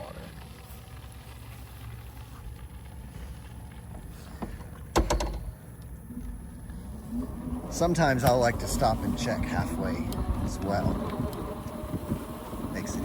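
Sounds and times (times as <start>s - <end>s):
electric motorbike rumble: 0.0s - 13.0s.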